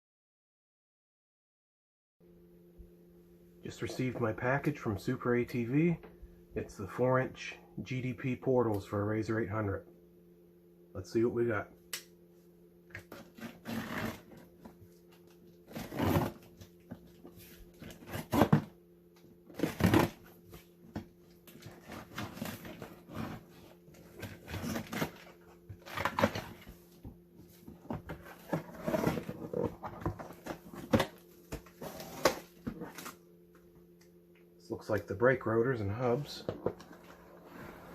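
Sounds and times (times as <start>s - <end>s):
steady low hum: 2.2s - 37.9s
cardboard box rustling and scraping: 13.1s - 14.8s, 15.6s - 18.7s, 19.5s - 20.5s, 21.5s - 26.8s, 27.4s - 33.2s, 36.6s - 37.9s.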